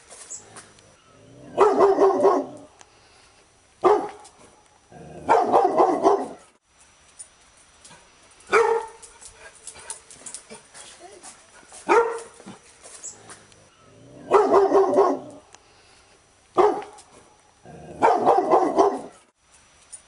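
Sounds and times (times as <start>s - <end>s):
dog barking: 1.5s - 2.7s, 3.8s - 4.2s, 5.2s - 6.5s, 8.5s - 9.0s, 11.8s - 12.4s, 14.2s - 15.4s, 16.6s - 17.0s, 18.0s - 19.3s.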